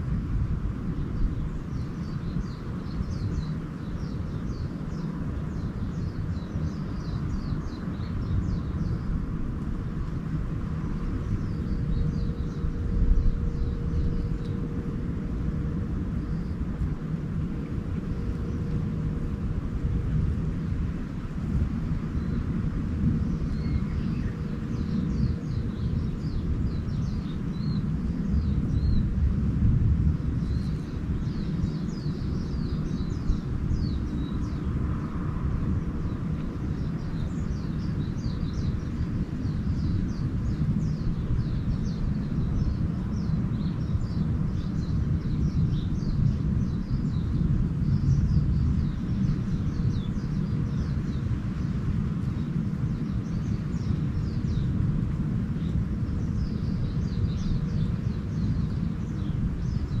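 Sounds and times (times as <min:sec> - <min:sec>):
small birds chirping: 0:00.0 - 0:29.3, 0:30.1 - 1:00.0
steady low rumble: 0:00.0 - 1:00.0.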